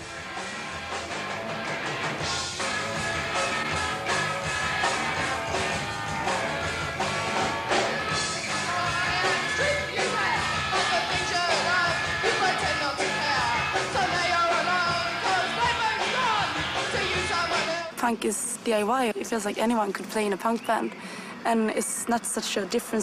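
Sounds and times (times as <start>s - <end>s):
punk rock band music: 0.0s - 18.0s
person singing: 8.1s - 18.0s.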